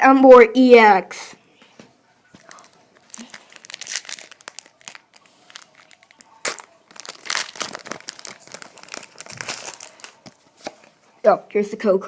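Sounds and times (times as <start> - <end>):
foil wrapper crinkling and tearing: 2.4 - 10.9.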